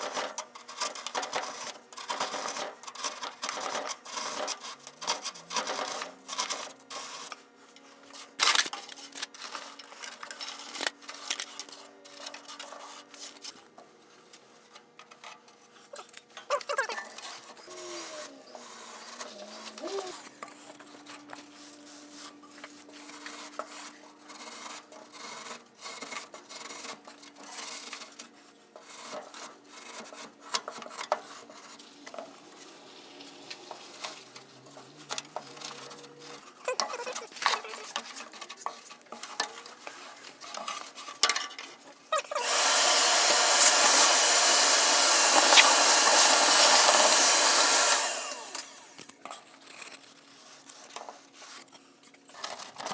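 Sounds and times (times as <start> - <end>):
loud motor running: 42.3 - 49.0.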